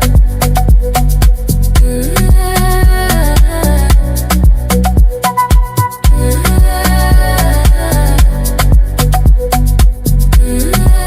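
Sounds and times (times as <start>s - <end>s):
afrobeat music: 0.0s - 11.0s.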